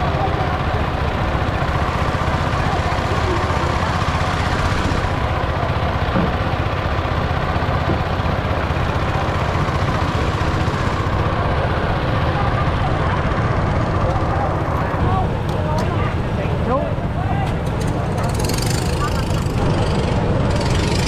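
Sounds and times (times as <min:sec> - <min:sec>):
motor running: 0:01.6 - 0:06.4, 0:07.9 - 0:11.9, 0:17.6 - 0:21.0.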